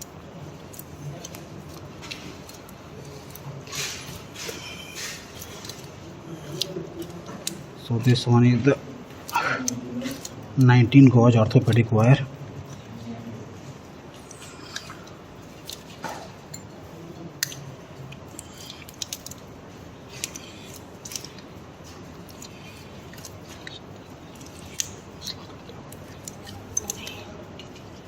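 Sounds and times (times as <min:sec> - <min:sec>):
low room hum: 0:00.0 - 0:28.0.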